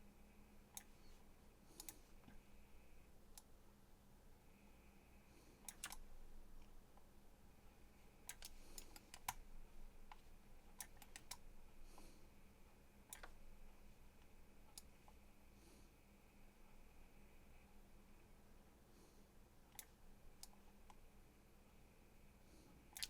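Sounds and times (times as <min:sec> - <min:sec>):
faint room hum: 0:00.0 - 0:23.0
computer mouse clicks: 0:00.7 - 0:02.4, 0:03.3 - 0:03.5, 0:05.6 - 0:07.1, 0:08.2 - 0:12.1, 0:13.0 - 0:13.5, 0:14.2 - 0:15.2, 0:19.7 - 0:21.0.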